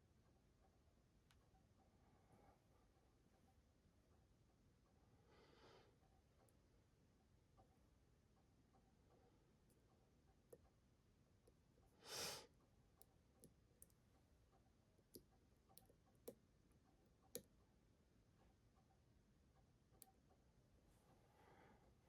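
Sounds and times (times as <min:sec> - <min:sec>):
short breathy hiss: 0:12.0 - 0:12.5.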